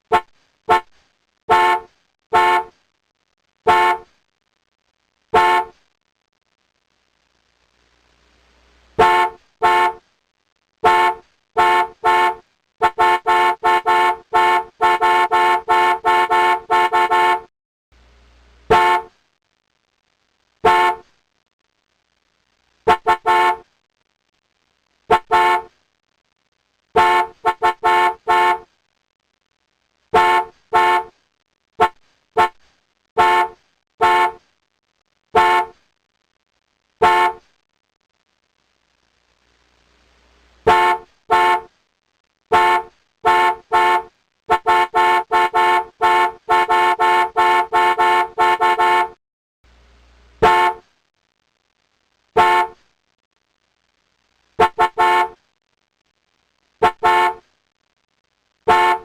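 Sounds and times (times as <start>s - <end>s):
car horn honking: 0.1s - 0.9s, 1.5s - 2.7s, 3.7s - 4.0s, 5.4s - 5.7s, 9.0s - 10.0s, 10.8s - 17.5s, 18.7s - 19.1s, 20.6s - 21.0s, 22.9s - 23.6s, 25.1s - 25.7s, 27.0s - 28.6s, 30.1s - 31.1s, 31.8s - 32.6s, 33.2s - 34.4s, 35.4s - 35.7s, 37.0s - 37.4s, 40.7s - 41.7s, 42.5s - 49.2s, 50.4s - 50.8s, 52.4s - 52.8s, 54.6s - 55.4s, 56.8s - 57.4s, 58.7s - 59.0s.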